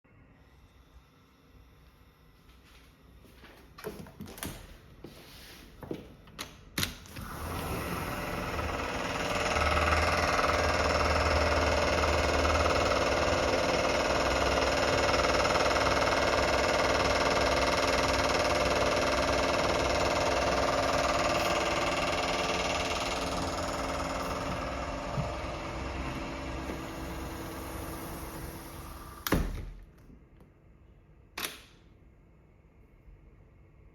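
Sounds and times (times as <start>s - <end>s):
construction machinery running: 7.2s - 29.3s
sharp click: 31.4s - 31.8s.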